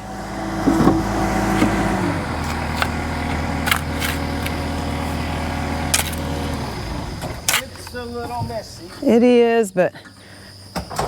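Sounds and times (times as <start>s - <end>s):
diesel engine running: 0.0s - 9.1s
sharp knocks: 0.6s - 1.8s.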